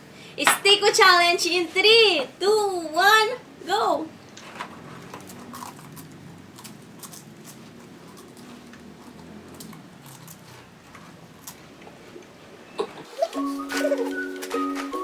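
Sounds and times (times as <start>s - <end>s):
people chewing crunchy snack: 4.4s - 15.0s.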